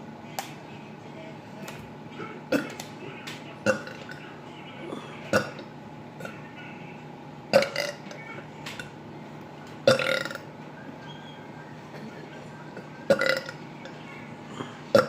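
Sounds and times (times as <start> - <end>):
woman burping: 3.6 - 4.1, 4.8 - 6.4, 7.5 - 8.1, 9.9 - 10.5, 13.1 - 13.6, 14.5 - 15.0.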